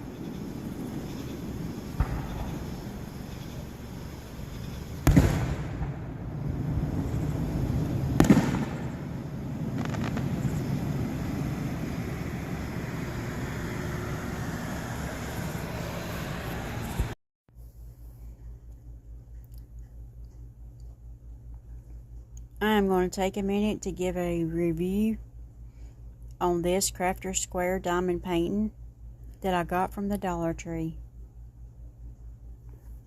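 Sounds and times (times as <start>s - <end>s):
fireworks bangs: 0.0s - 15.4s
steady background noise: 0.0s - 17.2s.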